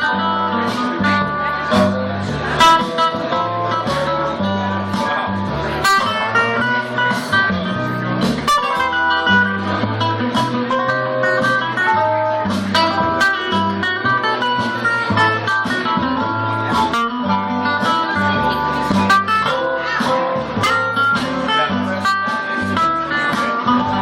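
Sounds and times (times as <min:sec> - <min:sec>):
guitar melody: 0:00.0 - 0:24.0
live band playing blues: 0:00.0 - 0:24.0.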